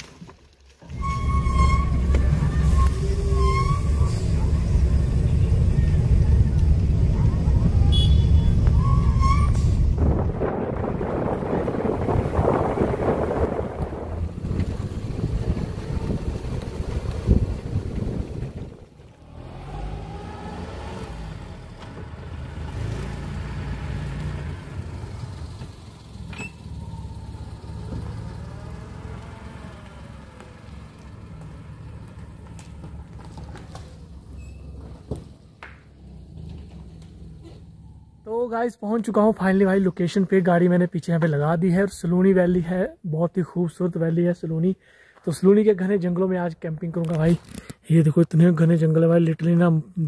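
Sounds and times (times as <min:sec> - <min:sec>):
wind noise on microphone: 0:07.2 - 0:19.0
car engine running: 0:10.1 - 0:20.2, 0:21.1 - 0:38.3.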